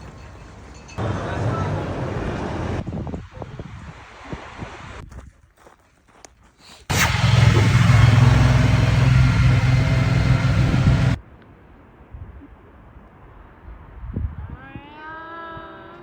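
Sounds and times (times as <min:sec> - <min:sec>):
loud engine drone: 0:06.9 - 0:11.2.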